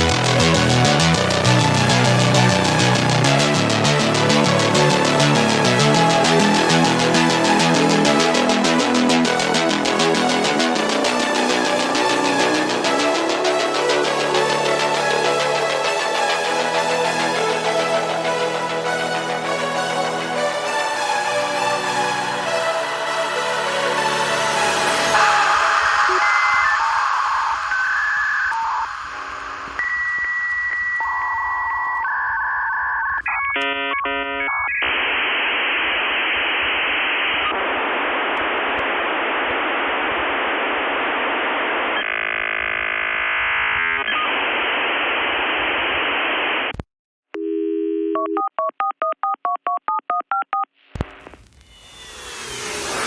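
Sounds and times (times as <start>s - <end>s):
music: 0.0s - 30.8s
dial-up modem tones and squeals: 25.2s - 35.0s, 42.0s - 44.4s.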